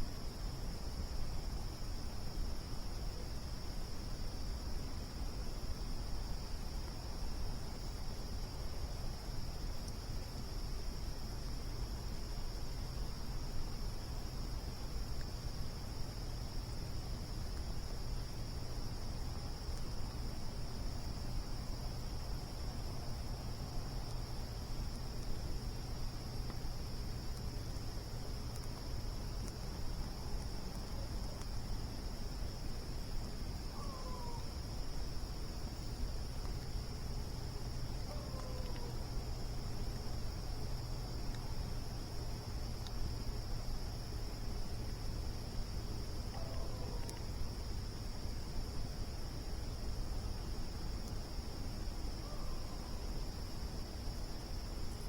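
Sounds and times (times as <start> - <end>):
crickets trilling: 0.0 - 55.0
low steady rumble: 0.0 - 55.0.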